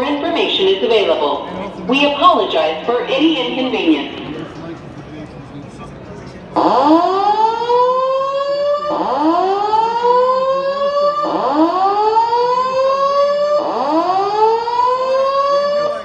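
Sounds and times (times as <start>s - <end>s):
fire alarm whoop tone: 6.6s - 16.0s.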